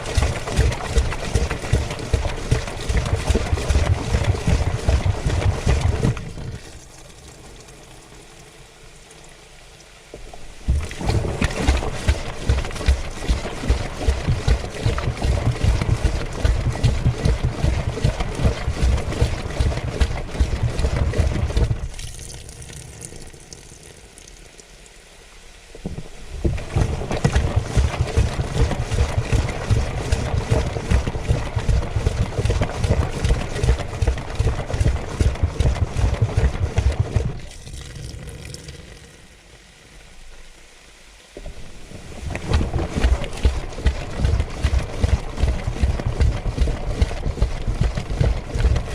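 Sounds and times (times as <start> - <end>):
water sloshing: 0.0 - 7.8, 10.1 - 23.2, 25.8 - 38.7, 41.4 - 48.9.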